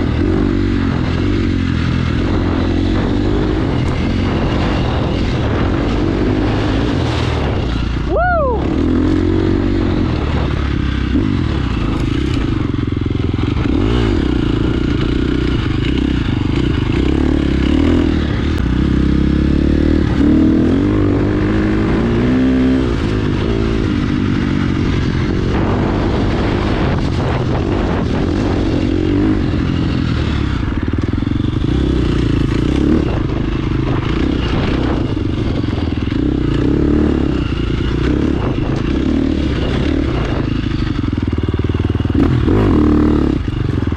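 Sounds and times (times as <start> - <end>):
motorcycle engine revving: 0.0 - 43.9.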